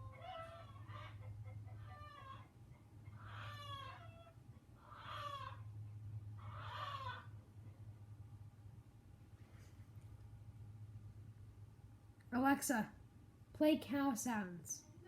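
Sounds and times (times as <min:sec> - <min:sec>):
recorded chicken clucks and squawks: 0:00.0 - 0:07.8
low steady hum: 0:00.0 - 0:15.0.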